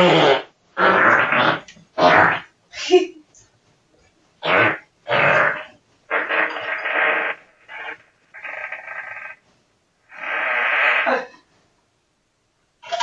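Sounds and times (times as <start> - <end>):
farts: 0.0 - 2.5, 4.4 - 9.4, 10.1 - 11.3.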